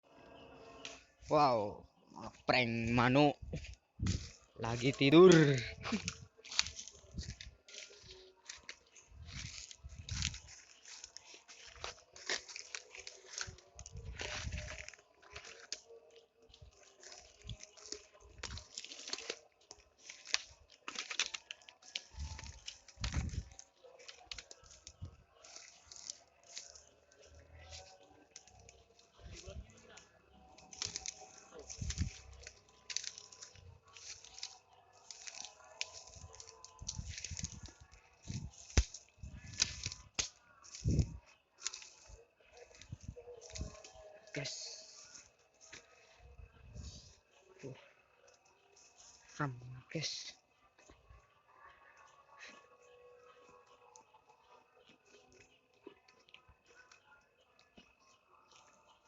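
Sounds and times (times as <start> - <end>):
dry leaves and twigs crunching: 0.6 - 59.0
rustling and crackling: 2.8 - 49.3.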